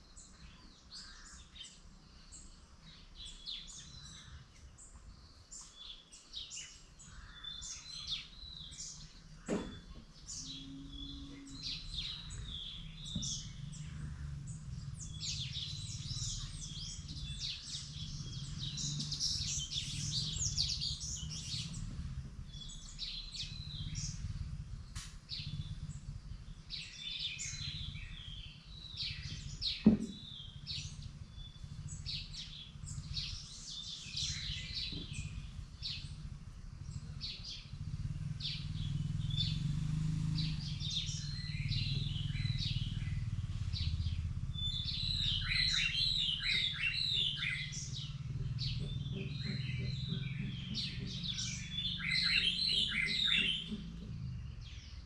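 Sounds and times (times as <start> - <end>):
low background rumble: 0.0 - 55.0
songbirds chirping: 0.0 - 55.0
knock: 9.5 - 10.0, 29.8 - 30.2.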